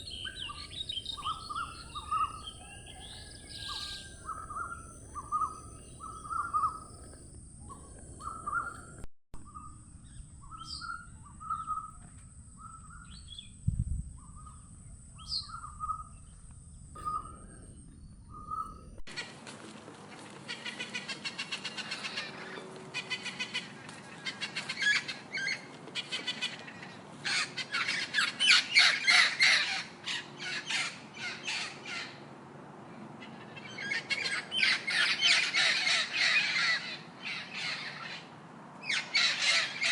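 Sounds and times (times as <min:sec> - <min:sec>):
steady high whine: 0:00.0 - 0:19.1
birds calling short notes: 0:15.2 - 0:19.4.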